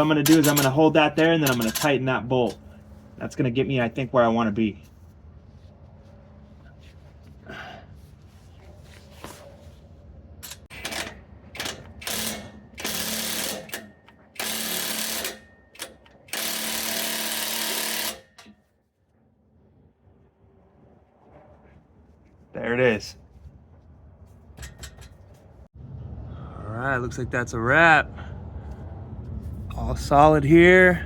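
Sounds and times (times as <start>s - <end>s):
impact wrench bursts: 0.0s - 2.7s, 10.4s - 18.6s.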